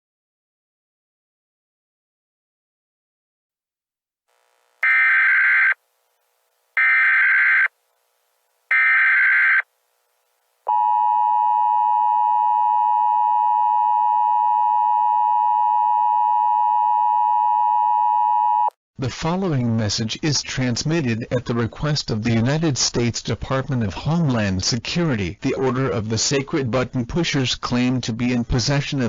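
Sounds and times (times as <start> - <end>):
data tone bursts: 4.8 - 5.8, 6.8 - 7.7.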